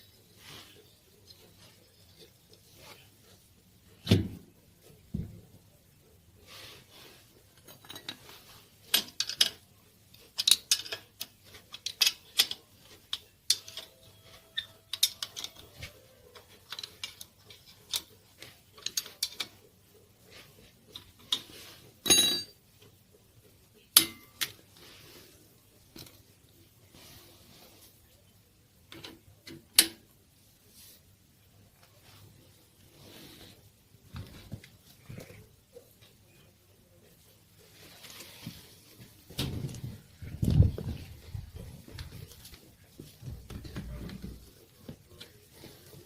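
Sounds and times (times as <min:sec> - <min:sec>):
metal tools clinking: 0:22.0 - 0:22.6.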